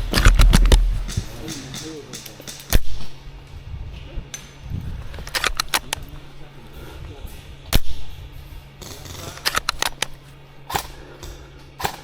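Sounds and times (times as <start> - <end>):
airsoft guns firing: 0.0 - 3.3, 7.7 - 8.2, 8.8 - 12.0.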